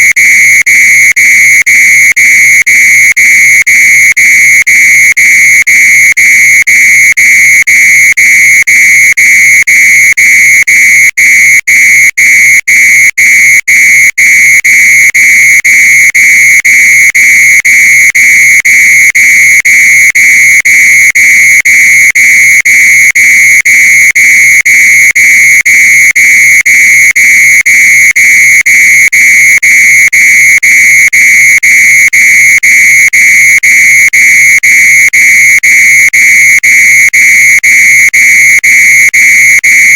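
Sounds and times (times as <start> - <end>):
fire alarm beeping: 0.0 - 39.9.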